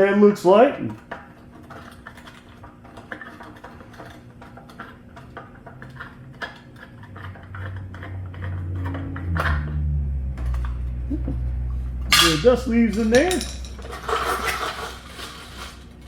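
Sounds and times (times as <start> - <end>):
low hum: 6.1 - 16.0
small metallic clicks and clinks: 12.2 - 14.5.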